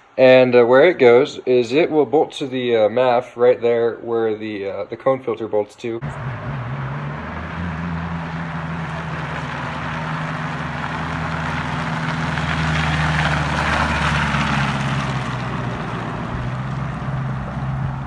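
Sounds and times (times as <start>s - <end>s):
car engine droning: 6.0s - 18.0s.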